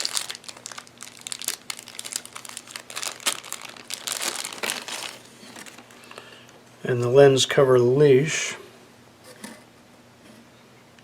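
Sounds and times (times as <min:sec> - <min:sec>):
plastic packaging crinkling: 0:00.0 - 0:06.3.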